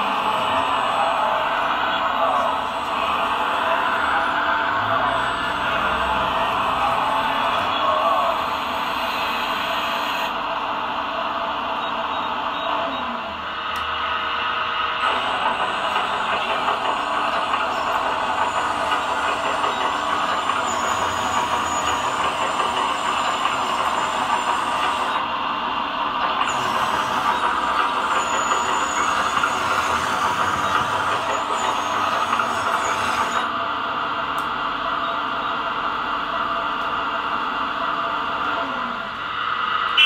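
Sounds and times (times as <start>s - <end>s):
faint high whine: 0.0s - 14.5s
model excavator engine noise: 0.0s - 40.0s.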